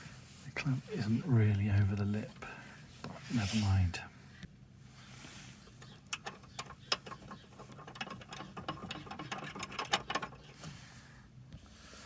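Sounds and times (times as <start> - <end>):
spanner clicking on metal nut: 6.1 - 10.4.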